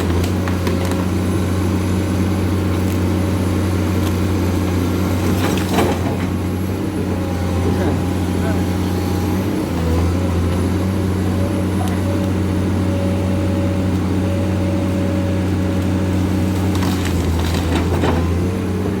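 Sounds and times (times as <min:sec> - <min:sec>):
excavator diesel engine running: 0:00.0 - 0:19.0
sharp cracks and knocks: 0:16.6 - 0:18.4.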